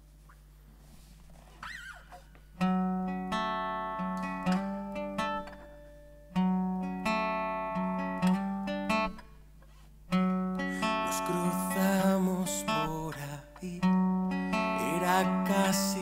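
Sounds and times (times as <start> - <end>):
acoustic guitar picked chords: 2.5 - 16.0.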